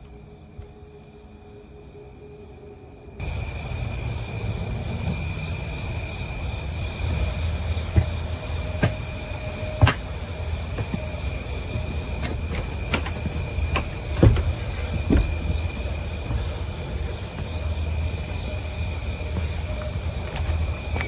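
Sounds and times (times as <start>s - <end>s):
short knocks: 8.0s - 17.5s.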